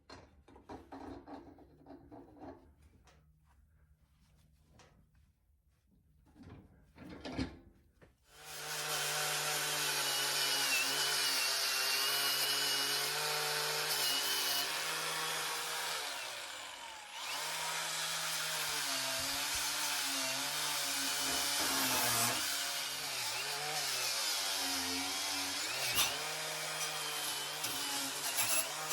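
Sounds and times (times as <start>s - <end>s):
power tool scouring rust off metal: 8.4s - 28.9s.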